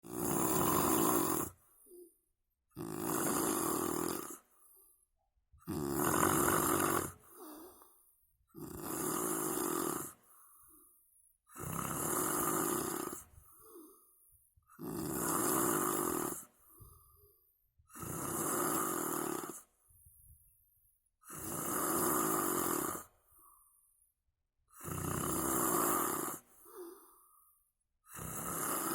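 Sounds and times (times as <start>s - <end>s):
loud snoring: 0.0s - 2.0s, 2.7s - 4.5s, 5.6s - 7.9s, 8.5s - 10.5s, 11.5s - 14.0s, 14.7s - 16.7s, 17.9s - 19.7s, 21.2s - 23.2s, 24.7s - 27.1s, 28.0s - 28.9s
quiet short breaths: 16.5s - 17.6s.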